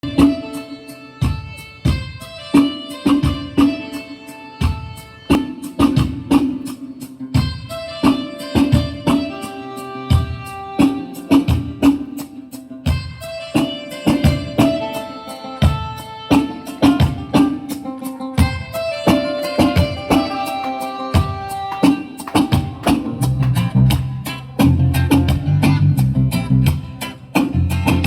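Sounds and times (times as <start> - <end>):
pitched drum strikes: 19.6 - 24.4.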